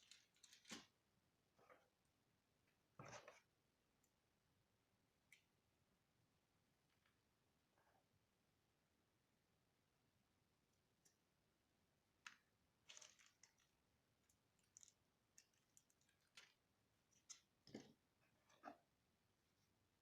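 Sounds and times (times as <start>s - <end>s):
faint irregular clicks and taps: 5.2s - 5.6s.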